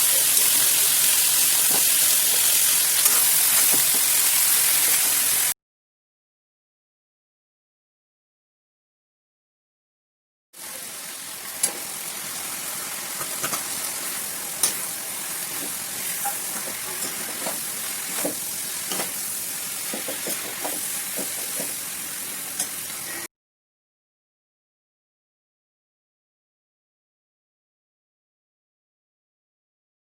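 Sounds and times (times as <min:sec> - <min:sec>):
food sizzling in a pan: 0:00.0 - 0:05.6, 0:10.6 - 0:23.3.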